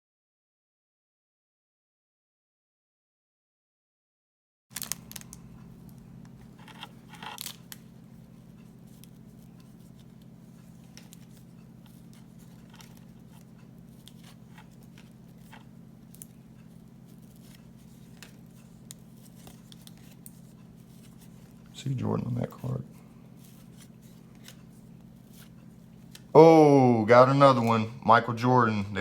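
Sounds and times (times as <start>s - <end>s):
cellophane wrapper crinkling and tearing: 4.7s - 7.9s, 17.0s - 21.4s
cards being handled: 4.7s - 26.3s
steady low hum: 4.8s - 29.0s.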